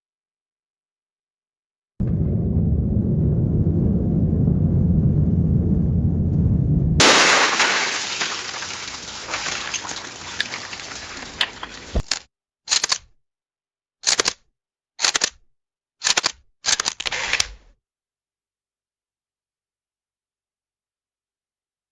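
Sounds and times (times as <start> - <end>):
camera shutter clicks: 12.0 - 13.0, 14.0 - 14.4, 15.0 - 15.4, 16.0 - 17.6.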